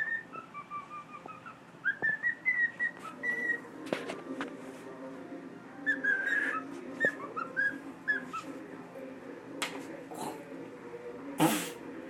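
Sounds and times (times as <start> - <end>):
cockatoo whistling: 0.0 - 3.6, 5.8 - 8.4.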